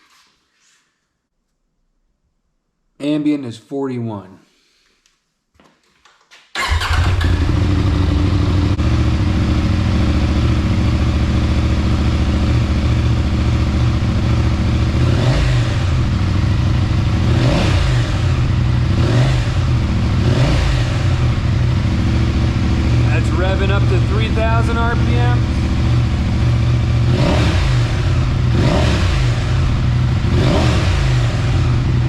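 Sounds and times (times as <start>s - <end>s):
motorcycle engine idling and revving: 6.6s - 32.0s.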